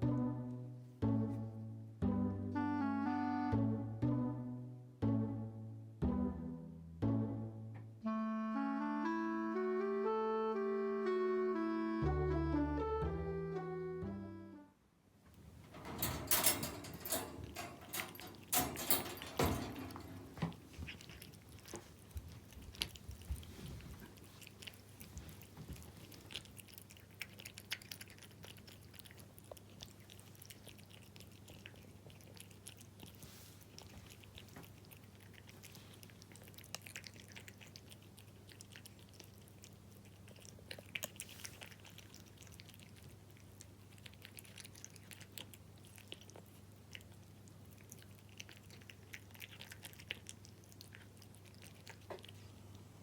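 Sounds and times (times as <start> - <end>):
cat chewing wet food: 20.2 - 53.0.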